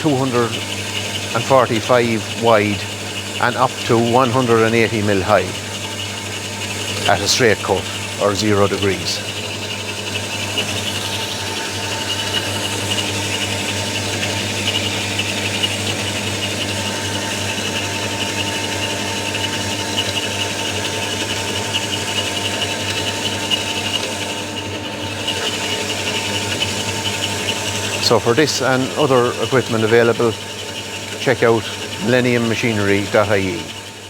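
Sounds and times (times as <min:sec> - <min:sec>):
bandsaw running: 0:00.0 - 0:34.0.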